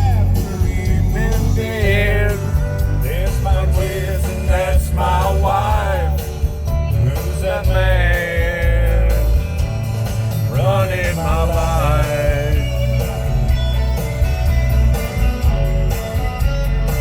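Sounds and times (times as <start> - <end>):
man singing: 0.0 - 13.6
bass: 0.0 - 17.0
guitar: 0.0 - 17.0.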